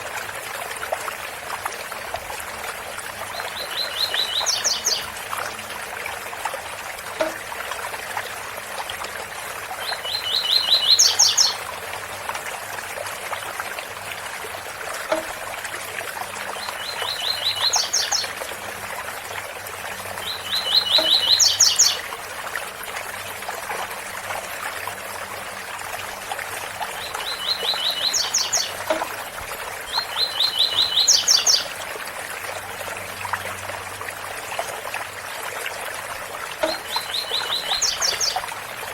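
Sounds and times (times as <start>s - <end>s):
small waterfall rushing: 0.0s - 38.9s
small bird singing: 3.5s - 5.1s, 9.8s - 11.6s, 16.7s - 18.3s, 20.2s - 22.0s, 27.2s - 28.9s, 29.9s - 31.7s, 36.6s - 38.4s.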